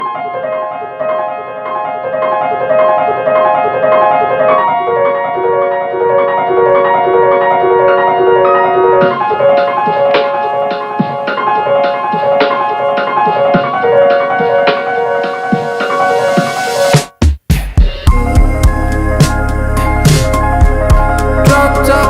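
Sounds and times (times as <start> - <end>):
keyboard melody: 0.0 - 17.2, 17.9 - 22.0
sharp percussion beat: 9.0 - 22.0.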